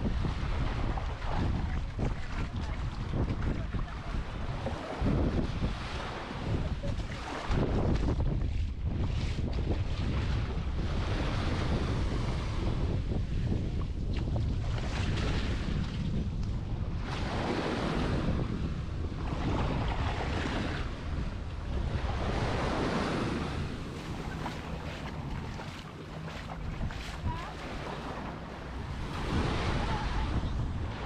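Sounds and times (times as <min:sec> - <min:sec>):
waves breaking on sand: 0:00.0 - 0:31.0
wind buffeting microphone: 0:00.0 - 0:31.0.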